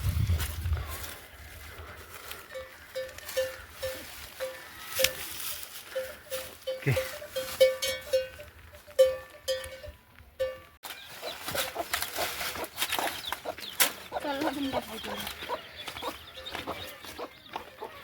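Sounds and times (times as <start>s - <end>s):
metal animal bell clanking: 5.9s - 8.4s
chickens clucking: 10.9s - 18.0s.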